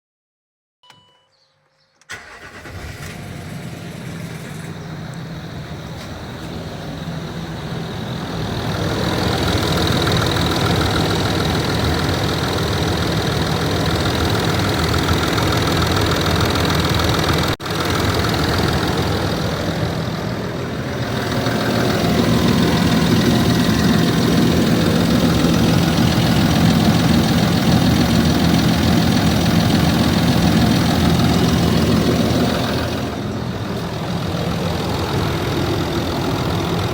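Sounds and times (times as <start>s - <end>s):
diesel engine knocking: 4.3s - 36.9s.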